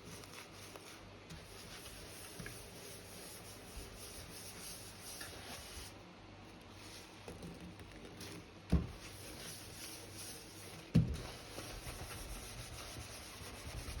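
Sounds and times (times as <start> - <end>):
sponge scrubbing sink: 0.2 - 6.0, 8.2 - 14.0.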